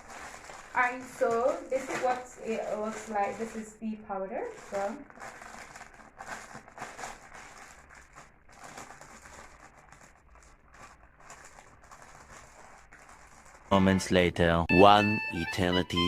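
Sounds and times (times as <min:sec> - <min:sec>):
packet crinkling and rustling: 0:00.0 - 0:13.7.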